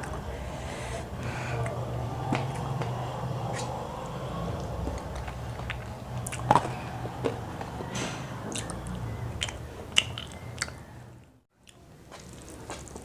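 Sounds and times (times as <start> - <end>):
chewing crispy fried chicken: 8.4 - 10.9.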